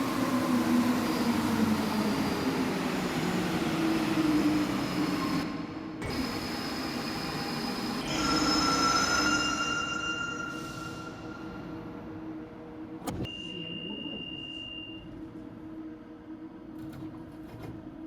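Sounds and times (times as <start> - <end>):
metro train whine: 0.0 - 16.7
steady high-pitched tones: 8.0 - 12.6.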